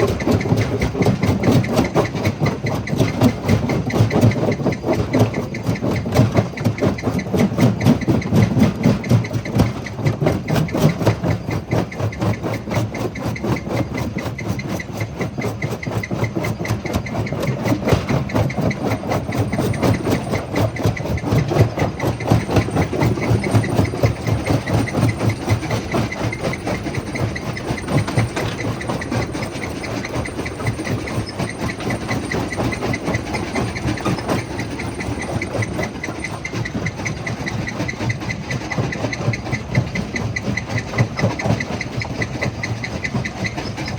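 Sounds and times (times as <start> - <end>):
crusher rumbling with pulsing beat: 15.2 - 43.6.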